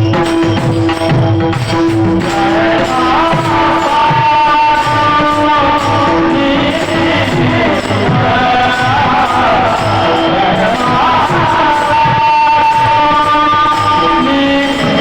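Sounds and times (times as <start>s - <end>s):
person singing devotional melody: 0.0s - 15.0s.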